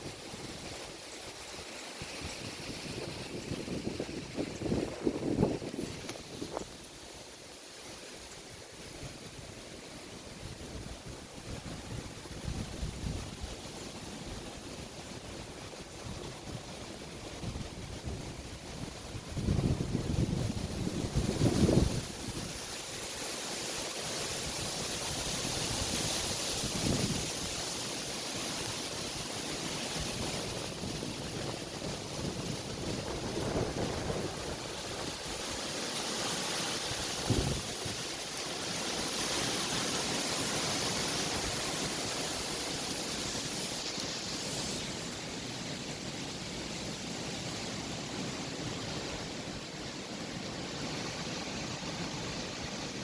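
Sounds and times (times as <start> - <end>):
strong gusty wind: 0.0 - 7.2, 10.2 - 53.0
wind buffeting microphone: 1.4 - 6.8, 10.4 - 13.8, 14.4 - 23.0, 24.4 - 27.8, 29.9 - 35.7, 36.8 - 38.2.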